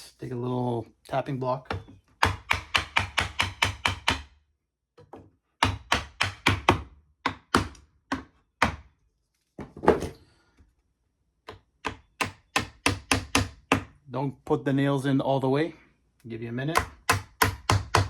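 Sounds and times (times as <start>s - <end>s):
hammer tapping wooden block: 1.7s - 4.3s, 5.1s - 8.8s, 11.4s - 13.9s, 16.8s - 18.0s.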